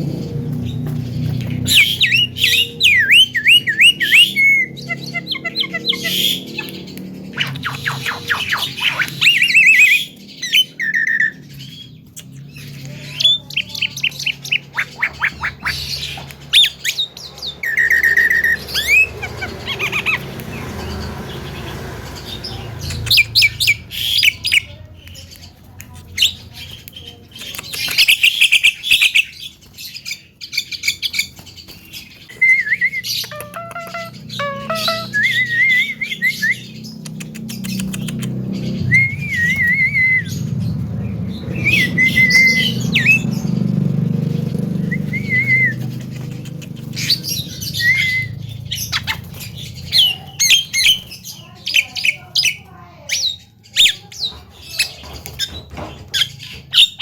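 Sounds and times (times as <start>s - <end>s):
myna calling: 32.4s - 36.6s.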